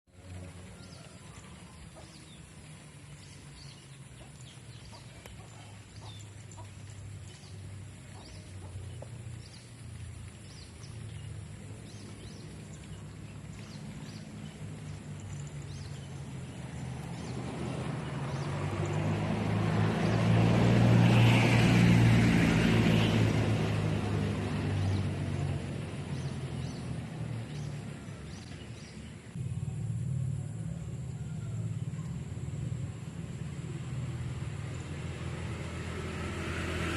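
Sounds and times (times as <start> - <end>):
passing vehicle: 0.0 - 36.9
low hum: 24.0 - 36.6.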